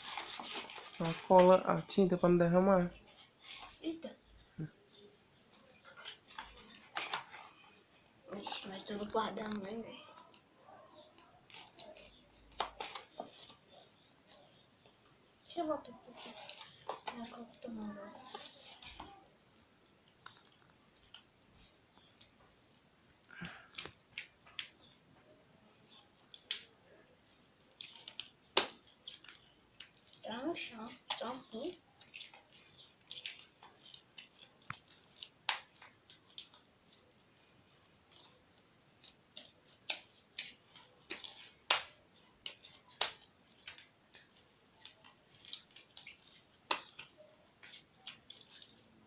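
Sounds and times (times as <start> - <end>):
slime being worked by hand: 25.9 - 49.0.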